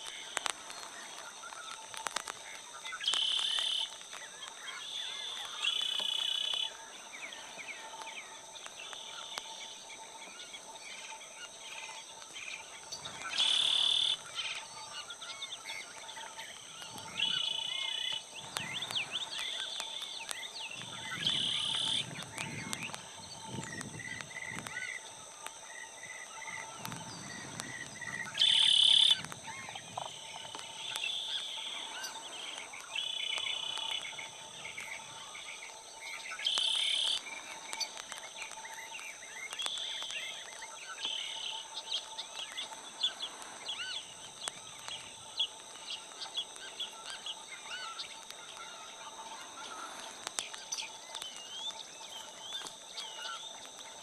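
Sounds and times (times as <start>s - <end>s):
high-pitched insect drone: 0.0s - 54.0s
birds chirping and calling: 12.6s - 24.9s.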